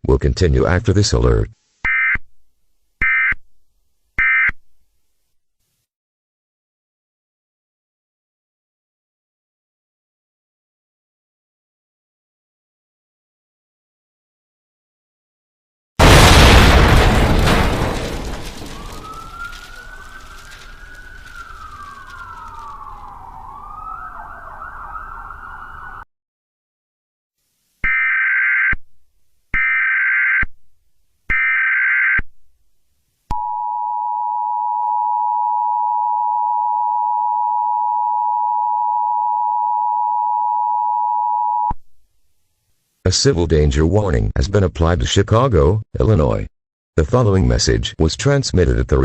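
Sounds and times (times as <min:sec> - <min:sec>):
explosion rumble: 0:16.0 - 0:23.9
siren wailing: 0:18.4 - 0:26.1.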